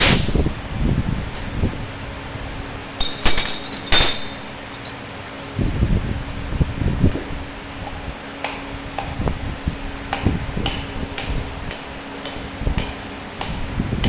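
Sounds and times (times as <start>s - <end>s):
metal parts clinking: 3.0s - 5.1s.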